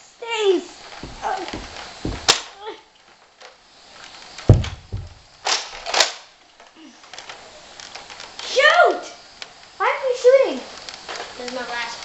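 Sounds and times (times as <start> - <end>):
heavy thump: 1.0 - 2.5, 4.5 - 5.4
foam dart blaster sharp crack: 2.2 - 2.6.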